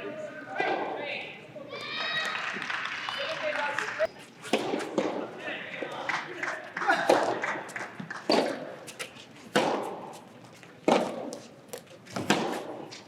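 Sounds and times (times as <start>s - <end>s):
rackets hitting ball in hall: 4.5s - 8.8s, 9.5s - 10.1s, 10.8s - 13.0s.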